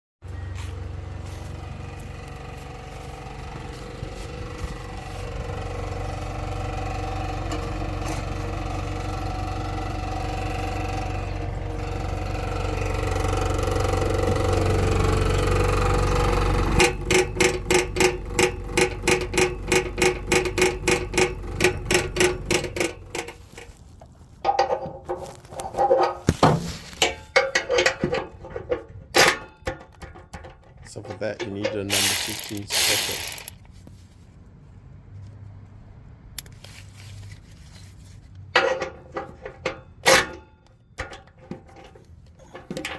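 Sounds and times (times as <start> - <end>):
car engine and exhaust droning: 0.2 - 24.8.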